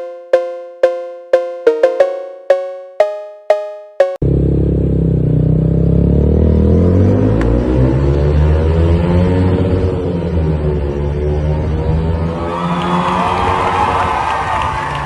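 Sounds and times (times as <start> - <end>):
bell-like musical notes: 0.0 - 4.2
motorcycle engine revving: 4.2 - 12.4.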